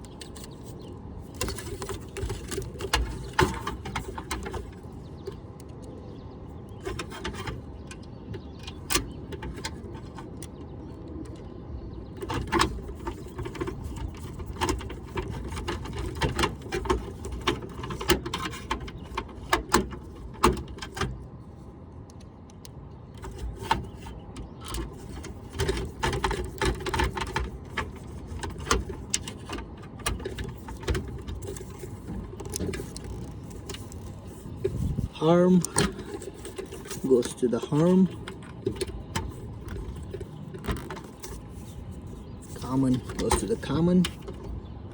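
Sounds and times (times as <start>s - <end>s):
clicks taps and small rattles: 0.0s - 21.3s, 22.0s - 44.9s
steady low rumble: 18.6s - 44.9s.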